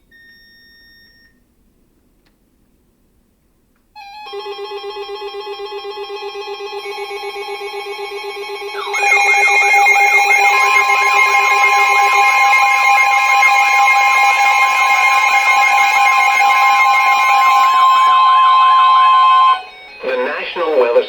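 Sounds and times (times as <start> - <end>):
pulsing alarm tone: 4.3 - 20.4
warbling siren: 4.9 - 20.2.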